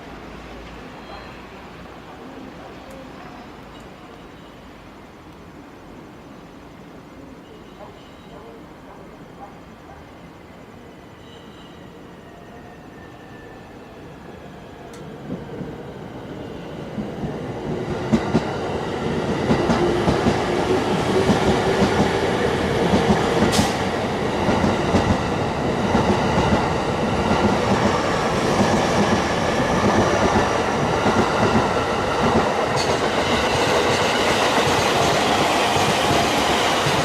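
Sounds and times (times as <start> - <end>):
train rumbling past: 11.9 - 37.0.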